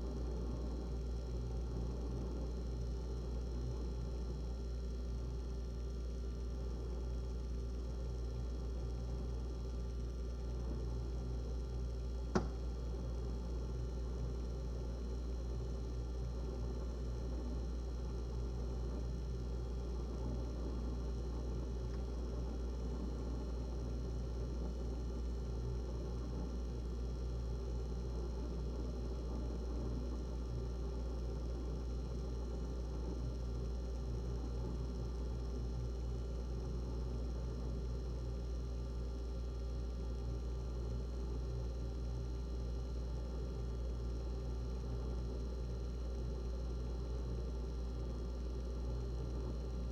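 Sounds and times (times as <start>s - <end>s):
refrigerator humming: 10.4s - 13.6s.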